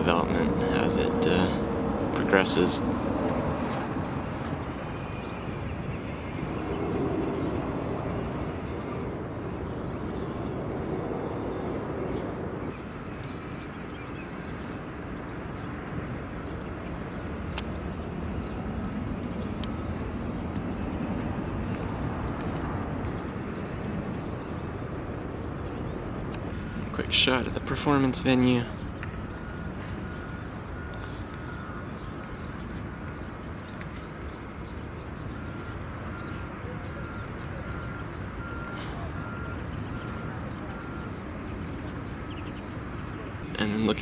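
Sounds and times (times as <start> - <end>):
outdoor background rumble: 0.0 - 44.0.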